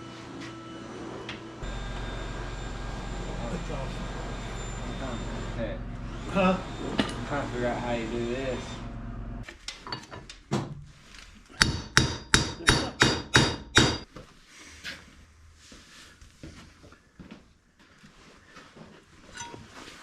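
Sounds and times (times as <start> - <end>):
hammer striking metal: 11.6 - 14.1.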